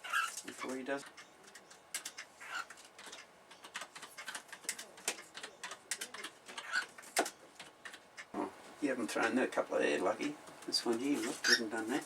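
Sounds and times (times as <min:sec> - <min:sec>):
cockatiel chirp: 0:02.4 - 0:02.7.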